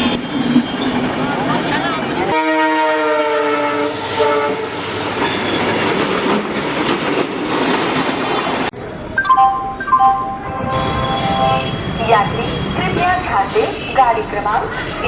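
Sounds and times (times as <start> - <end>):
moving train noise: 0.0 - 15.0
train horn: 2.3 - 4.8, 10.5 - 12.0.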